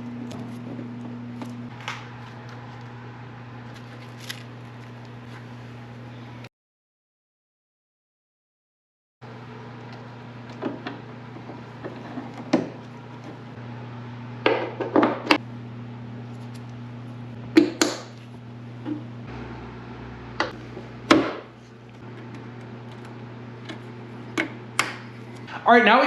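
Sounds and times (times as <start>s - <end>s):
steady low hum: 9.2s - 26.0s.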